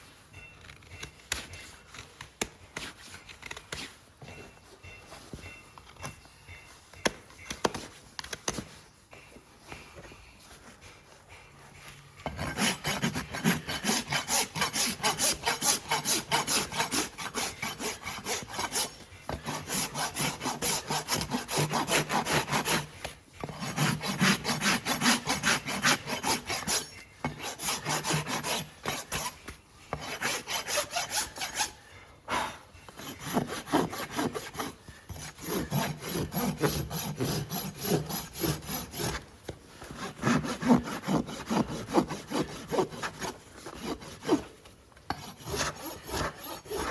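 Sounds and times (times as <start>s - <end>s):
rasp filing a hoof: 12.2s - 46.9s.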